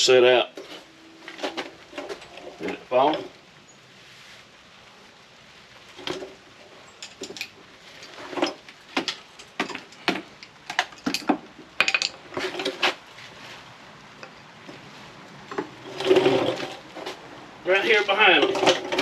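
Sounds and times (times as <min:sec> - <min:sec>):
metal parts and tools clattering: 0:00.6 - 0:03.3, 0:07.0 - 0:13.0, 0:15.4 - 0:17.2, 0:17.9 - 0:19.0.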